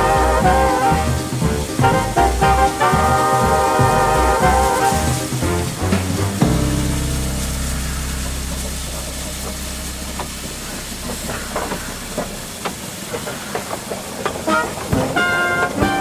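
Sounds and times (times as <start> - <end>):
music: 0.0 - 12.0, 14.5 - 16.0
train hissing and clicking: 0.0 - 16.0
low held tone: 6.4 - 12.7.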